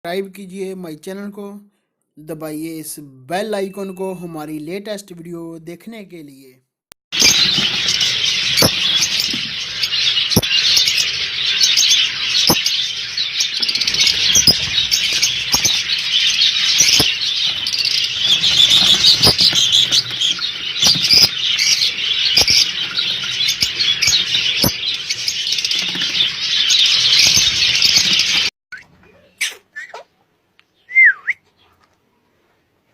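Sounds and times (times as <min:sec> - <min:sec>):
lovebirds chattering: 0:07.2 - 0:28.5.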